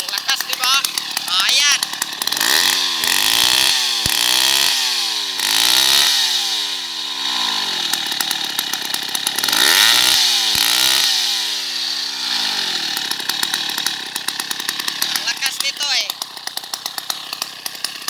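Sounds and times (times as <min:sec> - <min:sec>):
chainsaw engine revving: 0:00.0 - 0:18.0.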